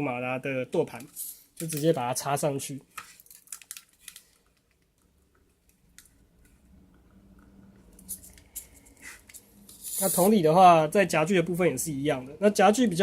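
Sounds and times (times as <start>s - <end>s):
plastic parts clicking: 0.9s - 2.0s.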